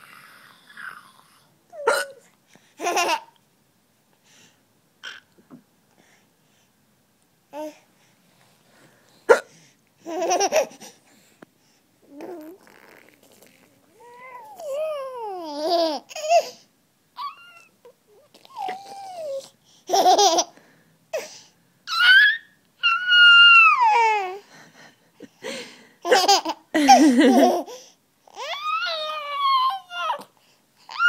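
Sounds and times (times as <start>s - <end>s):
baby laughing: 2.8s - 3.4s, 10.1s - 10.9s, 19.9s - 20.5s, 26.0s - 27.8s
high-pitched baby squeals: 17.2s - 17.8s, 21.9s - 24.4s, 28.3s - 30.2s.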